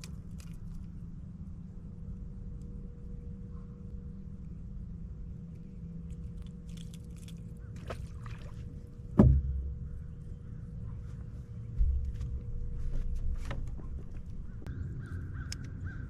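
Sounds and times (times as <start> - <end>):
faint steady whine: 0.0 - 15.8
steady low hum: 0.0 - 16.0
small knock: 9.2 - 9.7
loud thump: 9.2 - 9.9.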